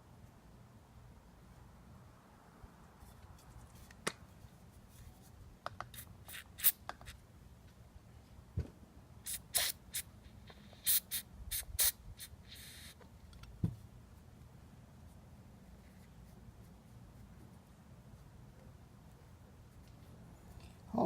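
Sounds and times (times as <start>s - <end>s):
aerosol spray hissing: 9.3s - 13.0s.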